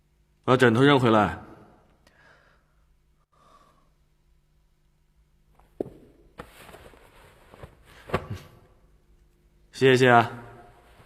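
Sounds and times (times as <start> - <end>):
bedding rustling: 5.7 - 8.8.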